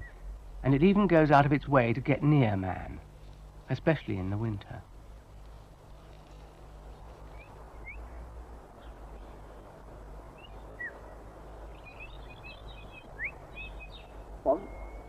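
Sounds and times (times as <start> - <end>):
steady low hum and hiss: 0.0 - 15.0
songbird chirping and twittering: 6.1 - 15.0.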